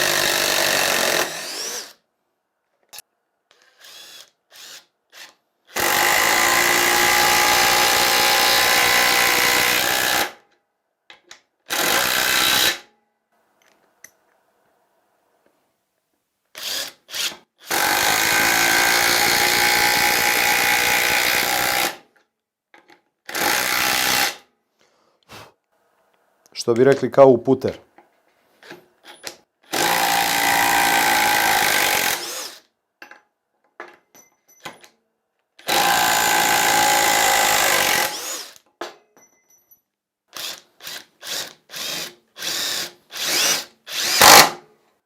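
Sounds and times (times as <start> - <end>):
impact driver driving screws: 40.4 - 44.6.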